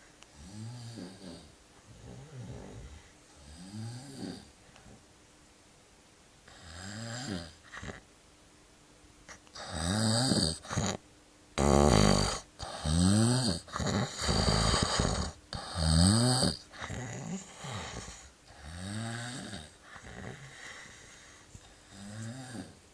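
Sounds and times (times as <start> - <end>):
man snoring loudly: 0.4 - 4.5, 6.5 - 8.0, 9.6 - 11.0, 11.6 - 21.0, 21.9 - 22.8.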